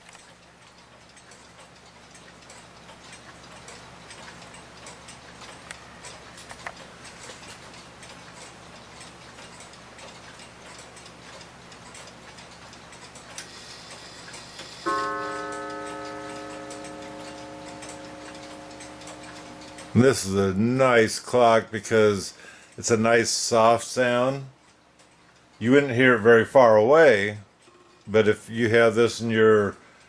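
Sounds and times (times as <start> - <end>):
clock mechanism whir: 0.1 - 22.1
mantel clock ticking: 0.2 - 21.6
clock gong strike: 14.8 - 20.0.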